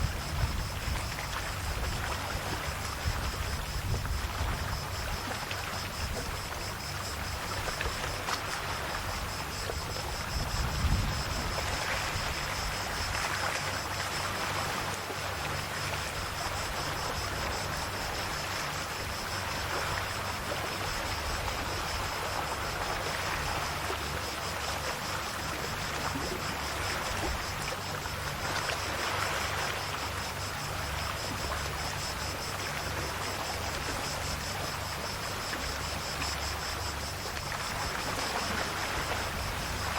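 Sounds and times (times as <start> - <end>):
high insect buzz: 0.0 - 39.9
sea waves washing ashore: 0.0 - 39.9.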